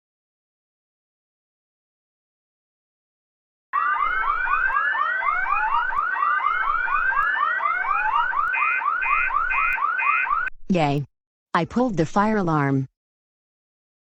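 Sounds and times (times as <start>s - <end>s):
fire alarm whooping: 3.8s - 10.5s.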